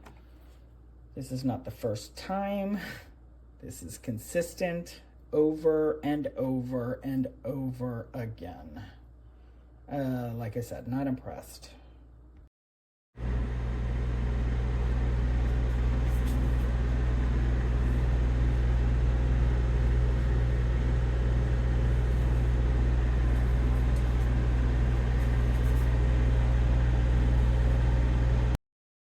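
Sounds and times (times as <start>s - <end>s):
coffee maker pump humming: 13.2s - 28.6s.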